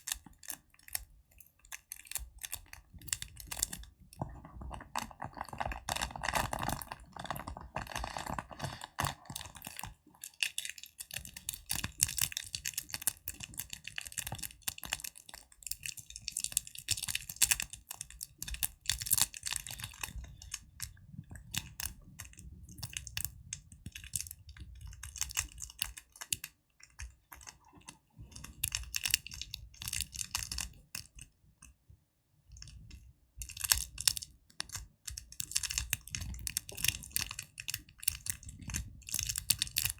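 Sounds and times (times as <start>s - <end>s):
hand tapping and crackling: 0.0s - 31.8s.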